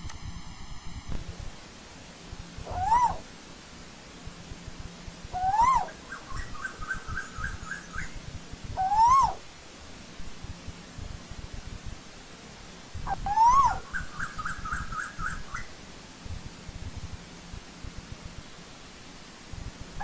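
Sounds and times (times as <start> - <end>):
koel whistled calls: 2.6 - 3.2, 5.4 - 8.1, 8.8 - 9.4, 13.1 - 15.7.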